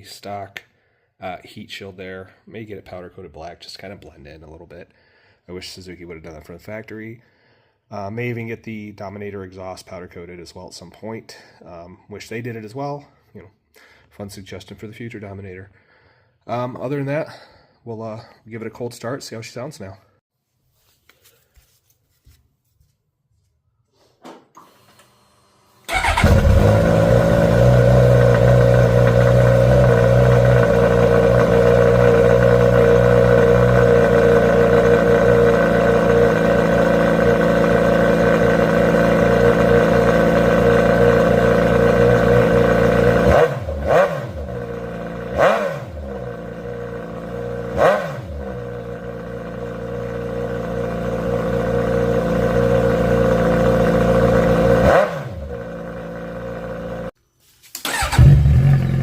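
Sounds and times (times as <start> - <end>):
motorcycle engine idling and revving: 25.9 - 57.2, 57.9 - 59.0.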